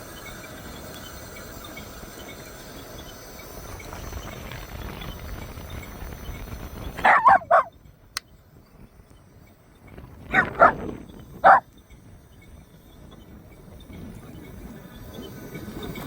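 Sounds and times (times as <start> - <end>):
dog barking: 7.0 - 7.7, 10.3 - 11.6.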